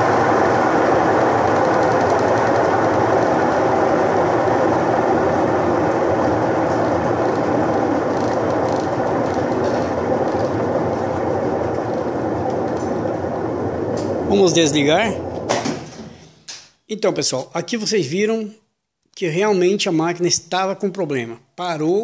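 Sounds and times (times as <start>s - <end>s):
washing machine mechanical racket: 0.0s - 16.6s.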